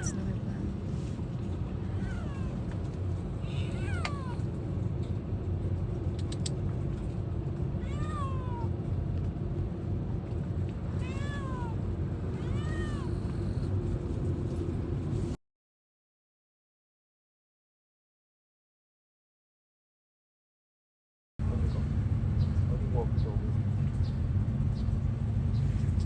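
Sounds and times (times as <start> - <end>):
cat meowing: 0.0 - 0.2, 1.8 - 4.5, 7.8 - 8.7, 10.9 - 13.7
low background rumble: 0.0 - 15.4, 21.4 - 26.0.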